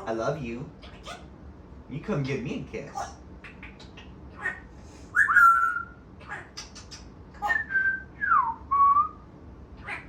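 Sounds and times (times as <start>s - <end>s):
parrot whistling: 3.5s - 9.2s.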